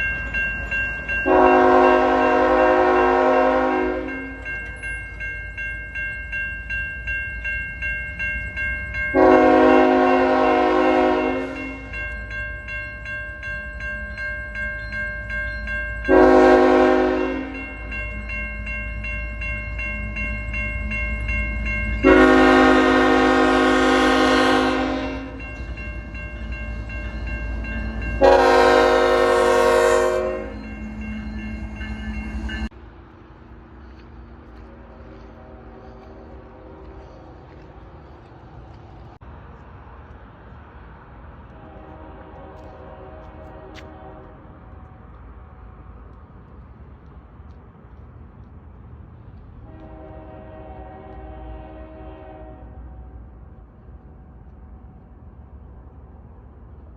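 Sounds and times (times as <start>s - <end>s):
pulsing steady ringing: 0.0s - 23.4s
low rumble of train: 0.0s - 56.9s
locomotive horn blasts: 1.2s - 4.4s, 9.2s - 11.9s, 16.1s - 17.7s, 22.0s - 25.5s, 28.2s - 30.7s, 35.2s - 37.0s, 41.5s - 44.5s, 49.6s - 53.2s.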